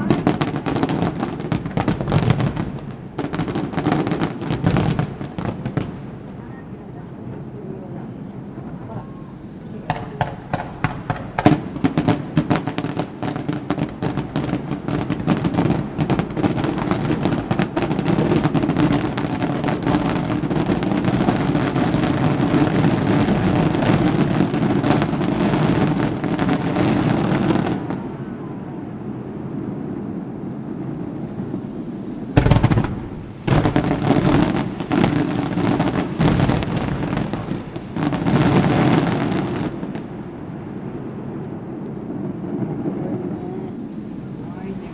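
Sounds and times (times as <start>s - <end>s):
heavy firework boom: 0.0s - 44.9s
continuous rumble: 4.6s - 13.2s, 13.8s - 25.5s, 41.7s - 44.9s
firework shell bursts and crackling: 8.3s - 28.0s, 32.1s - 40.6s.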